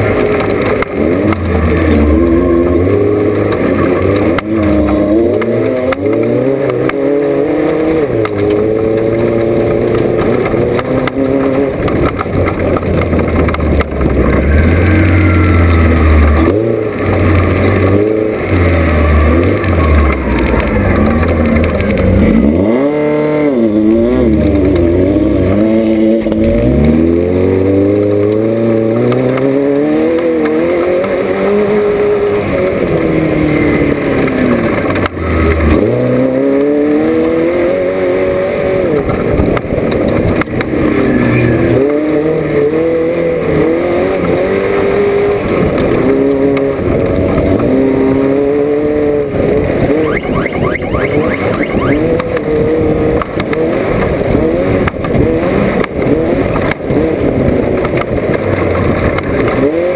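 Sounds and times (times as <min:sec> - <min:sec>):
race car engine revving: 0:00.0 - 0:59.9.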